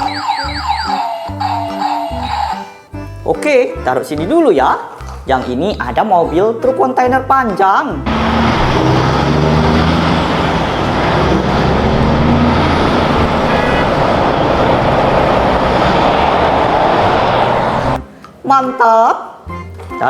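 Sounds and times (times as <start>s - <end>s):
truck engine running: 0.0s - 2.6s, 8.1s - 18.0s
road noise: 0.0s - 2.7s, 8.0s - 18.0s
high-pitched squeal: 8.1s - 18.0s.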